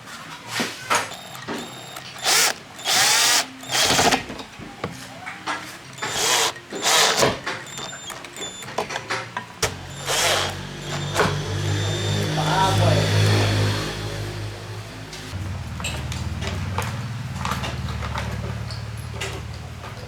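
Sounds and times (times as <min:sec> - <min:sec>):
power tool spinning: 0:01.0 - 0:04.5, 0:05.8 - 0:08.7, 0:09.6 - 0:13.7.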